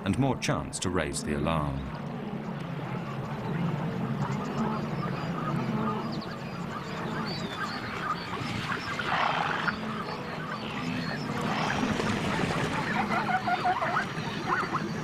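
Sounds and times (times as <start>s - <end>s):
wildebeest herd grunting: 3.9s - 15.0s.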